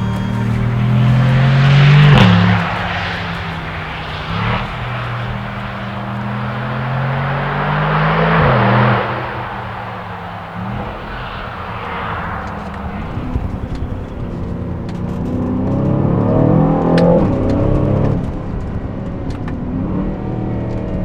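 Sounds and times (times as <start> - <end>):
car engine accelerating: 0.0 - 21.0.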